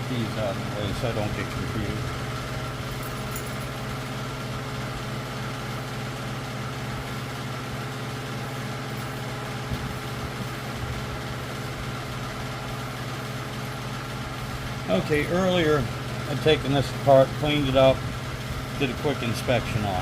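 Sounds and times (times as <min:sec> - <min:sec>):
electric fan humming: 0:00.0 - 0:20.0.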